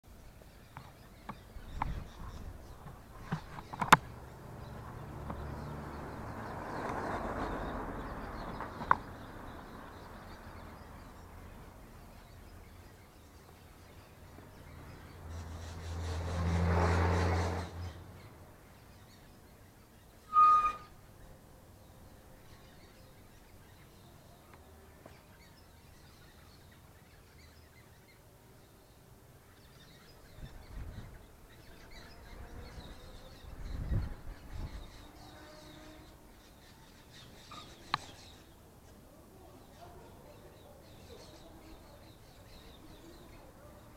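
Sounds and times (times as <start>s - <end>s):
motor vehicle passing: 2.7s - 12.2s, 14.0s - 19.2s
faint bird chirps: 18.8s - 21.4s.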